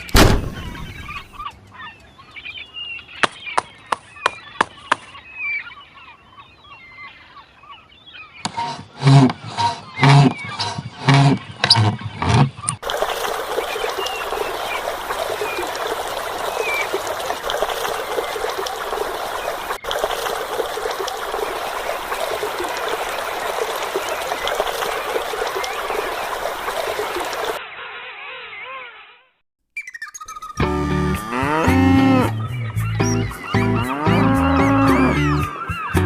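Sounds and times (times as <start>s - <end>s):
water trickling: 12.8s - 27.6s.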